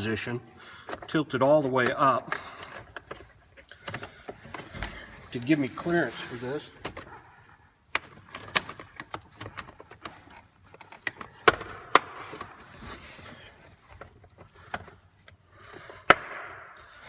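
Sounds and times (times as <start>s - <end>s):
plastic clicks and knocks: 7.9s - 12.6s
sharp plastic clicks: 10.8s - 12.6s.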